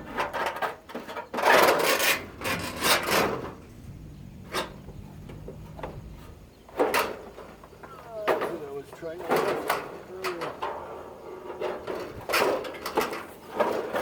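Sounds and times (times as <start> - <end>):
metal parts scraping: 0.0 - 3.8.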